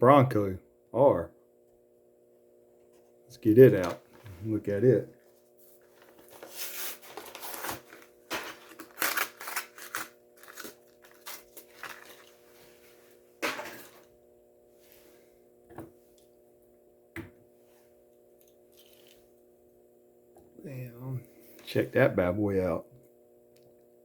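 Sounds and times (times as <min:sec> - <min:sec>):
steady low hum: 0:00.0 - 0:24.0
cardboard and plastic crackling: 0:05.8 - 0:12.4.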